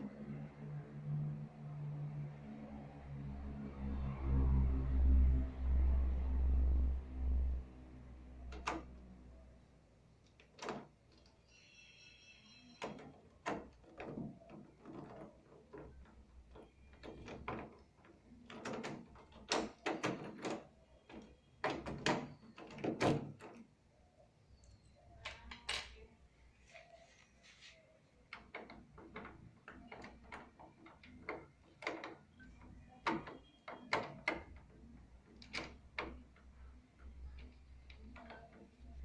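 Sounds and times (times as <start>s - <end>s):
key clicking in door lock: 10.2s - 11.4s, 28.3s - 39.0s
door squeak: 10.6s - 16.0s, 32.0s - 34.6s.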